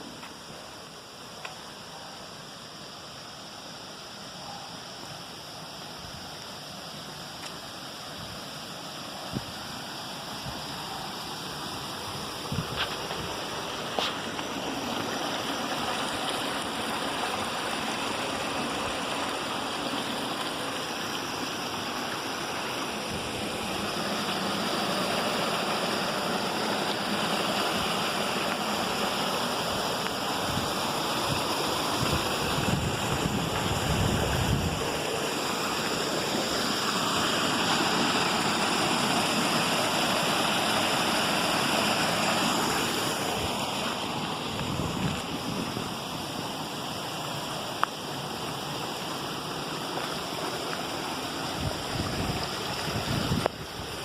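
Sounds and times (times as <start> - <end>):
cascading water rushing: 0.0 - 54.0
wind on microphone: 12.4 - 13.4, 30.5 - 34.9, 44.5 - 46.0, 51.5 - 54.0.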